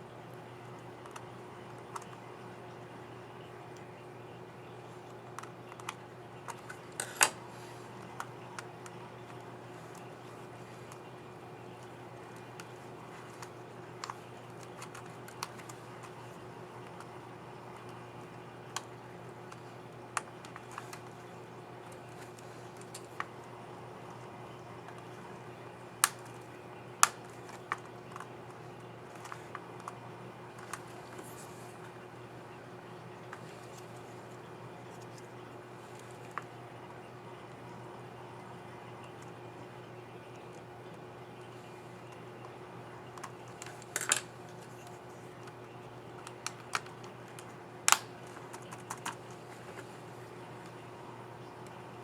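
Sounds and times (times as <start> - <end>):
faint steady hum: 0.0 - 52.0
laptop keyboard clicks: 11.7 - 17.1, 26.0 - 31.5, 46.2 - 49.9
laptop keycap clicking: 26.0 - 26.4, 27.0 - 28.3, 47.9 - 49.2.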